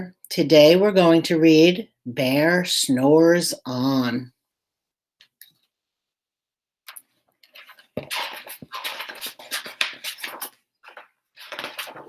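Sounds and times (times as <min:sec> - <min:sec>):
picture book pages rustling: 0:07.4 - 0:12.0.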